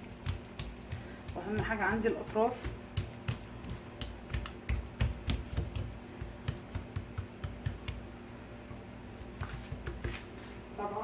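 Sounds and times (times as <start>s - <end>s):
hands patting dough: 0.0s - 10.7s.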